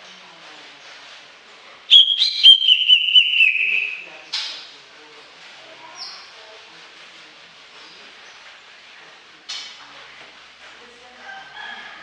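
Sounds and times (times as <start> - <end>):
bird singing whistled phrase: 1.9 - 4.1.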